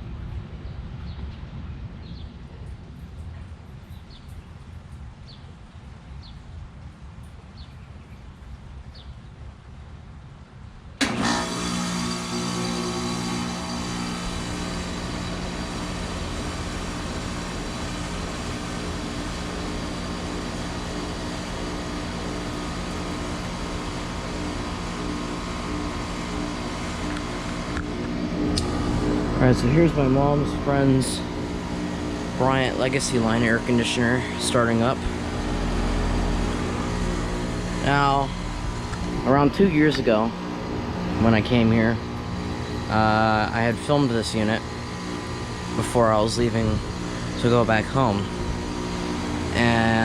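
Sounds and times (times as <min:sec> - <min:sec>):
compressor hum: 0:10.9 - 0:50.0
condenser fan rushing: 0:10.9 - 0:50.0
steady low rumble: 0:12.5 - 0:50.0.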